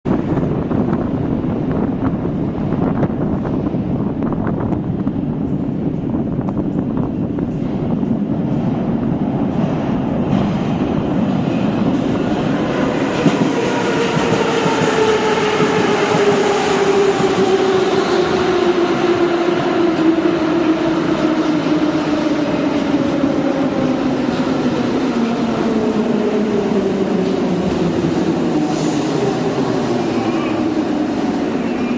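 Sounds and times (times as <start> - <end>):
train wheel and rail noise: 0.1 - 31.9.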